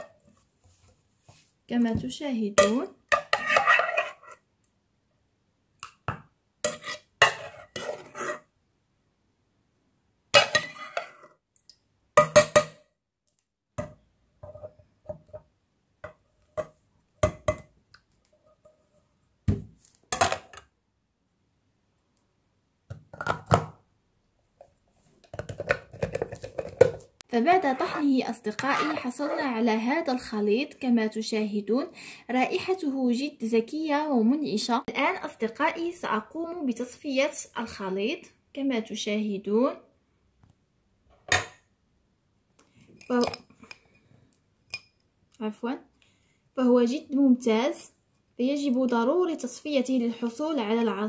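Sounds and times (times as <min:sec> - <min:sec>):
kitchen containers and utensils clinking: 0:10.4 - 0:11.3.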